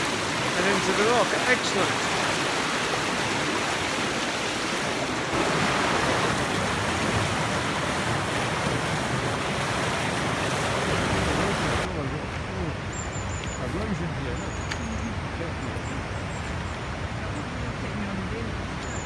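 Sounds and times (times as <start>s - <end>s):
water rushing over a dam: 0.0s - 12.8s.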